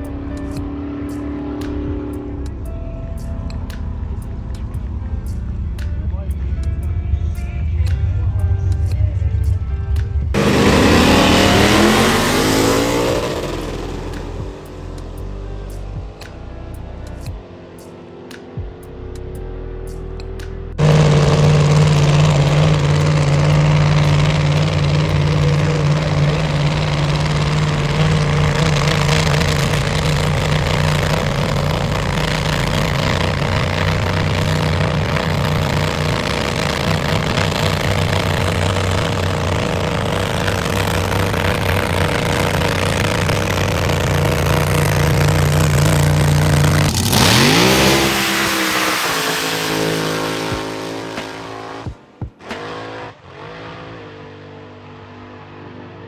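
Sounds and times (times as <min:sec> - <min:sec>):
car engine at high revs: 0:10.3 - 0:18.6, 0:20.4 - 0:56.0.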